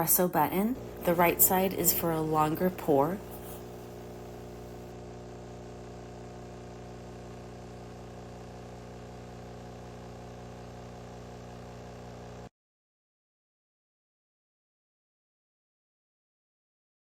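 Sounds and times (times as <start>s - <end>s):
espresso machine pump humming: 0.0s - 12.5s.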